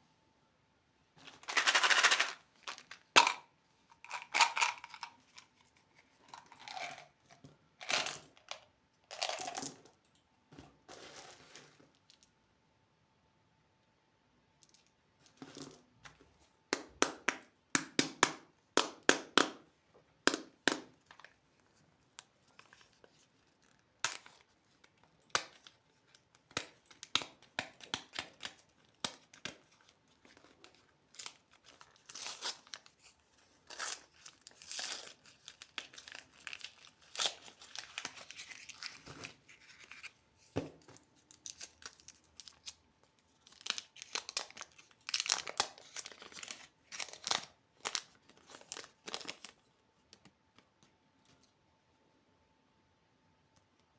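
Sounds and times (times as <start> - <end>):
candy wrapper crinkling and tearing: 1.4 - 9.8, 22.3 - 40.2, 41.2 - 49.7.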